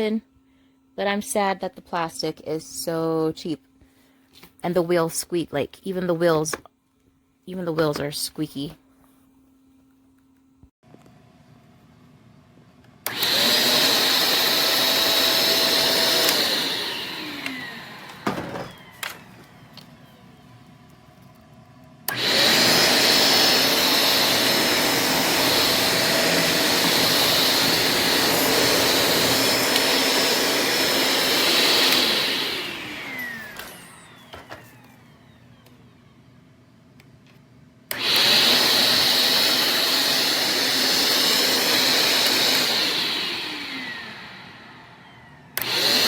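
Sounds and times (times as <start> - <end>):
vacuum cleaner whine: 13.0 - 36.8, 37.9 - 46.0.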